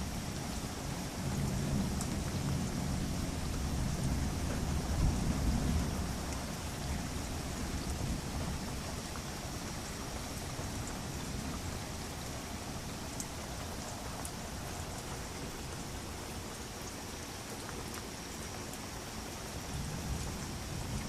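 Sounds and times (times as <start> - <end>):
steady rain falling: 0.0 - 21.0
low thunder rumble: 0.4 - 9.8, 19.6 - 21.0.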